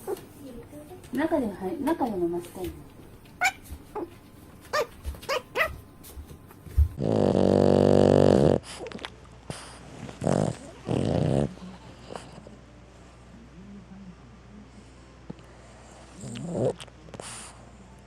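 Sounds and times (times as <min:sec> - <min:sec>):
dog squeaking in sleep: 0:04.7 - 0:05.8
dog growling in sleep: 0:07.0 - 0:12.6, 0:15.6 - 0:17.3.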